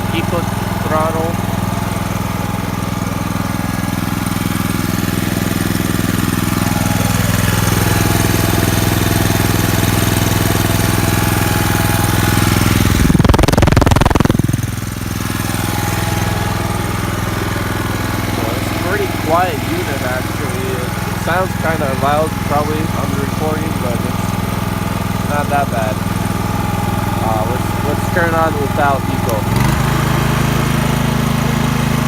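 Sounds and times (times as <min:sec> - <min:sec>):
generator running: 0:00.0 - 0:32.0
noisy rush: 0:12.8 - 0:14.8.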